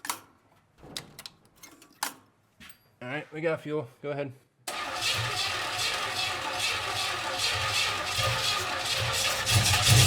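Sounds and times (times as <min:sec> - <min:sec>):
man talking: 0:03.0 - 0:04.4
car engine cranking on starter: 0:04.7 - 0:10.0.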